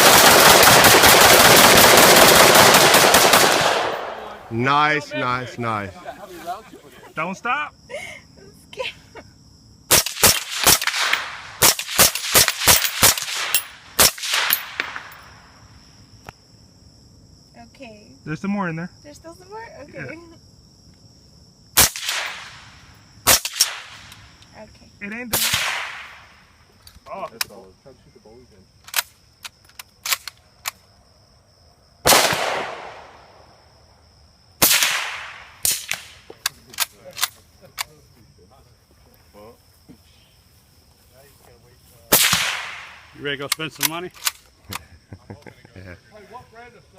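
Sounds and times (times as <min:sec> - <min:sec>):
gunshots: 0:00.0 - 0:04.5, 0:09.9 - 0:15.2, 0:21.8 - 0:24.1, 0:25.3 - 0:26.3, 0:32.0 - 0:33.2, 0:34.6 - 0:36.3, 0:42.1 - 0:43.1
loud gunshots with echo: 0:00.0 - 0:04.5, 0:32.0 - 0:33.2.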